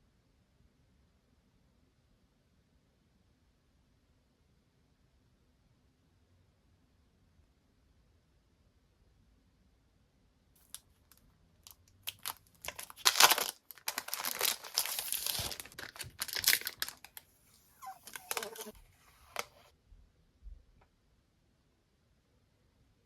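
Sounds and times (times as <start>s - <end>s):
packaging rustling and tearing: 12.0s - 19.7s.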